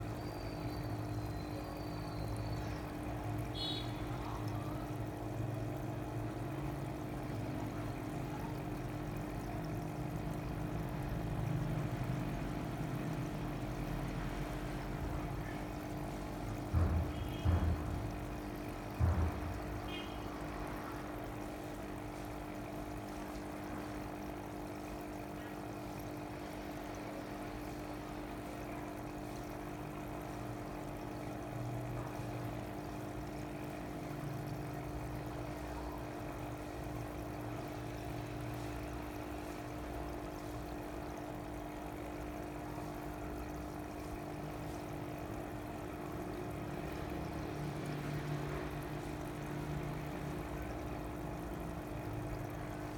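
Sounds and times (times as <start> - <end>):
pumps humming: 0.0 - 52.9
water pouring and trickling: 0.0 - 52.9.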